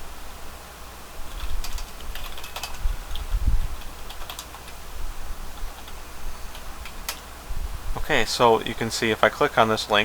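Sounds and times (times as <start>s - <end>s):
computer keyboard typing: 1.3s - 4.8s, 5.5s - 7.3s.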